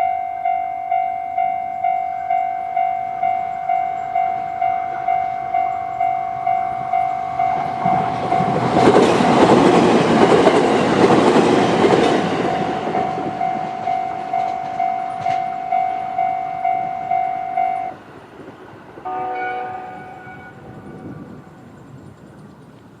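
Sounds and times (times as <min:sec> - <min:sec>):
level crossing warning bell: 0:00.0 - 0:18.0
electric train passing: 0:00.0 - 0:23.0
train wheel clatter: 0:00.9 - 0:23.0.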